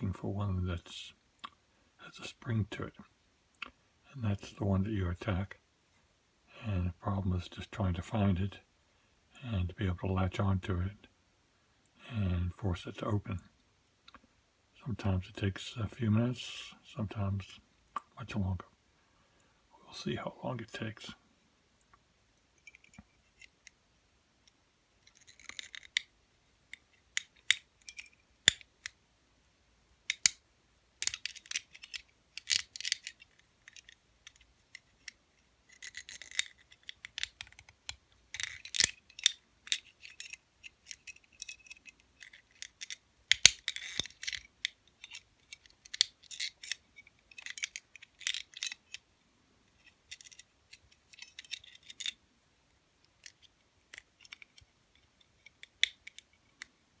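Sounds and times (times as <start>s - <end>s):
lock pick clicking in padlock: 27.2s - 29.0s, 30.1s - 30.4s, 31.0s - 34.4s, 35.7s - 49.0s.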